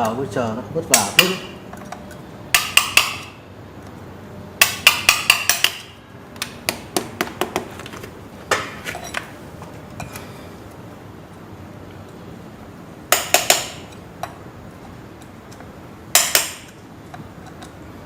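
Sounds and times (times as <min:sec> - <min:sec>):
metal tool tapping wire: 0:04.6 - 0:07.6, 0:13.1 - 0:14.4.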